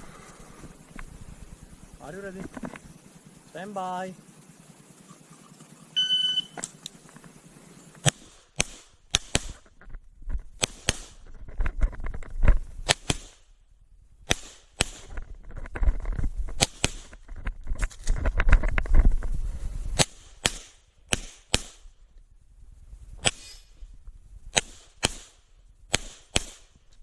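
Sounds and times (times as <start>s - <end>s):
pistol shots: 8.0s - 9.6s, 10.6s - 11.2s, 12.9s - 13.4s, 14.3s - 15.1s, 20.0s - 21.8s, 24.5s - 26.7s.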